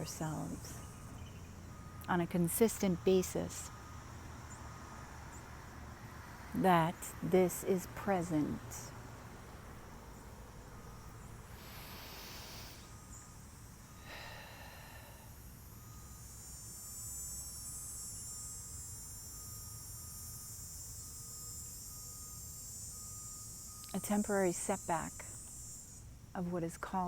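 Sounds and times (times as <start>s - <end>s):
high insect trill: 0.0s - 27.0s
soft breaths: 11.5s - 13.0s, 13.9s - 15.4s.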